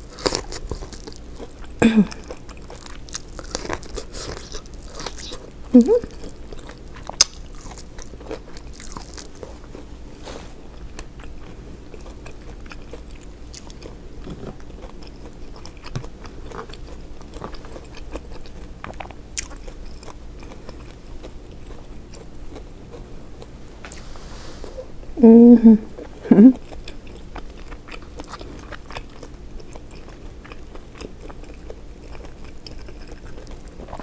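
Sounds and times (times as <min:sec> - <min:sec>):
person chewing seafood: 0:00.0 - 0:25.2, 0:25.9 - 0:34.0.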